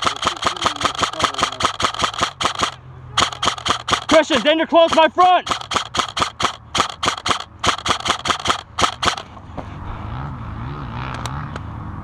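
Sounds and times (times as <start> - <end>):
airsoft guns firing: 0.0 - 9.3.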